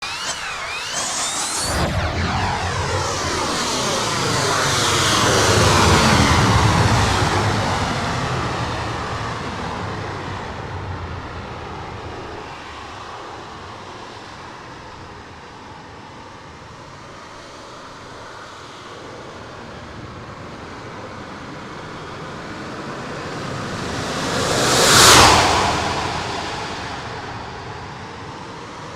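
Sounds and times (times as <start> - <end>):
model jet engine flying by: 0.0 - 15.6, 22.2 - 28.9.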